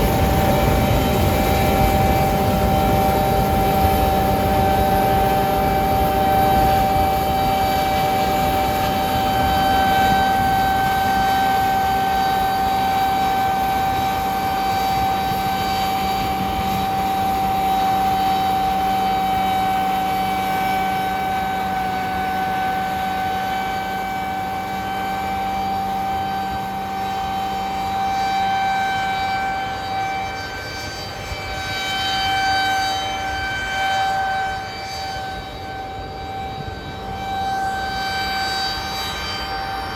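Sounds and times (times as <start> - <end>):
combine harvester engine: 0.0 - 27.8
high whizzing mill whine: 0.0 - 39.9.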